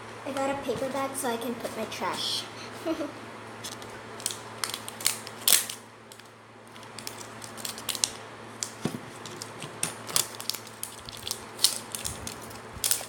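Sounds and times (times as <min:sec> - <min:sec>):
packaging crinkling and clicking: 0:03.7 - 0:13.0.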